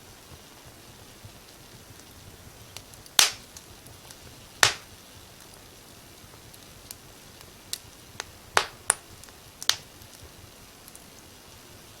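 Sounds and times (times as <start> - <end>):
fire crackles: 0.0 - 12.0
wood fire hissing: 0.0 - 12.0.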